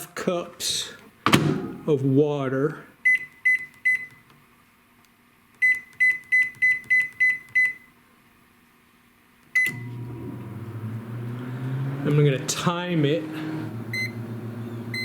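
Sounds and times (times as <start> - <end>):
microwave keypad beeping: 3.0 - 4.3, 5.6 - 7.9, 9.6 - 9.9, 13.9 - 14.2
microwave running hum: 9.5 - 15.0
microwave click: 9.6 - 10.8.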